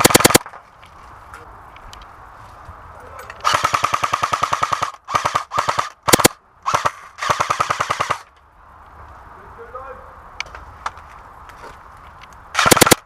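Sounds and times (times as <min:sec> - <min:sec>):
airsoft gun firing full auto: 0:00.0 - 0:00.5, 0:03.4 - 0:08.2, 0:12.6 - 0:13.0.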